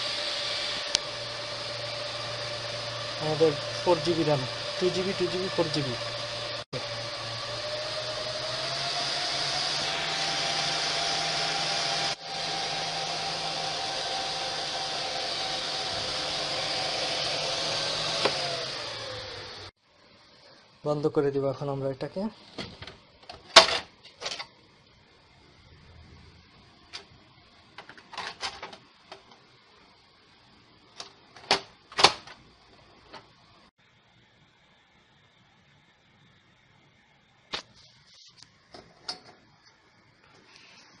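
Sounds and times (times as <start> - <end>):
server cooling fans whooshing: 0.0 - 19.8, 24.5 - 28.1.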